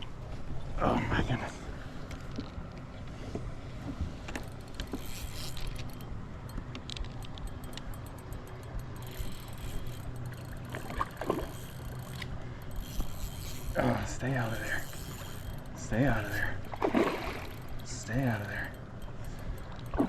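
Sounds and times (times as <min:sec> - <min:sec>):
steady low rumble: 0:00.0 - 0:20.0
fishing gear clicking and knocking: 0:04.2 - 0:20.0.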